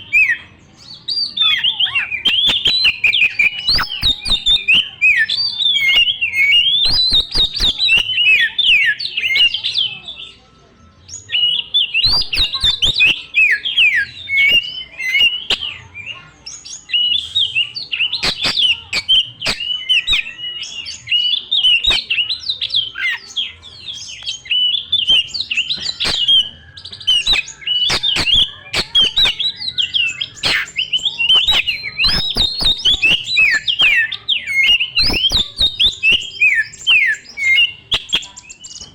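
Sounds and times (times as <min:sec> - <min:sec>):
bird singing: 0:00.0 - 0:38.9
sharp clicks: 0:06.9 - 0:08.2, 0:18.2 - 0:20.2, 0:25.8 - 0:26.5, 0:27.2 - 0:29.5.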